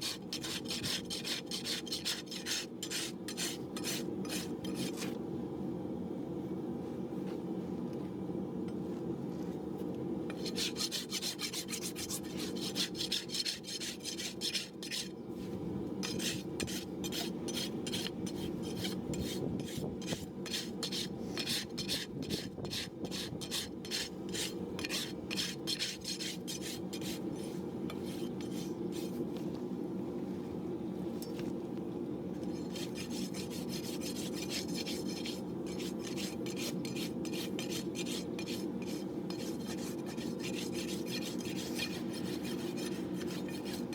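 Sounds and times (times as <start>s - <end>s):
rasp filing a hoof: 0.0s - 5.1s, 10.3s - 15.1s, 16.0s - 29.2s, 32.6s - 43.9s
steady low hum: 0.0s - 43.9s.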